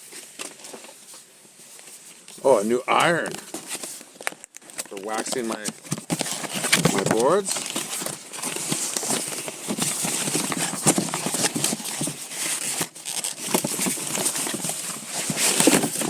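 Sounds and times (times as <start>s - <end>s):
packaging rustling: 0.0s - 16.0s.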